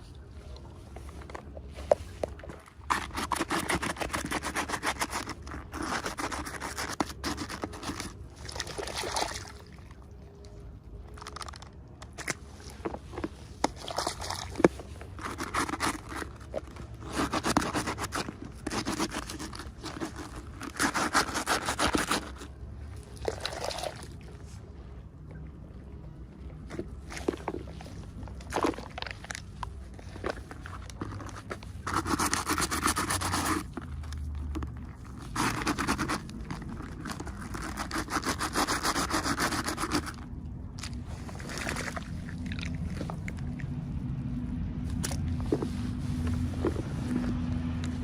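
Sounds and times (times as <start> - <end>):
packaging crinkling and rustling: 11.1 - 22.5.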